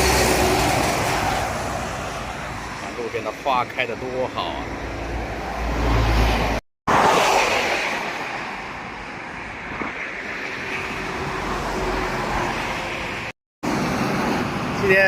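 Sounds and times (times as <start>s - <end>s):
vehicle passing loudly: 0.0s - 8.8s
highway traffic: 0.0s - 15.0s.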